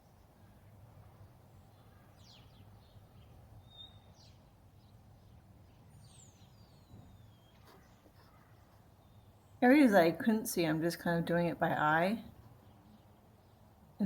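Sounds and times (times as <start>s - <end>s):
faint bird chirps: 0.0s - 9.6s.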